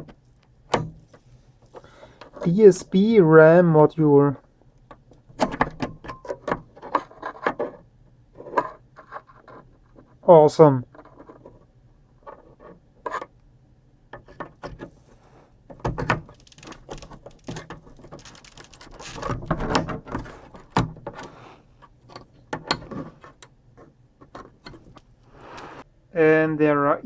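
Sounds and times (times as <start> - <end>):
metal parts clicking and scraping: 15.9 - 21.4.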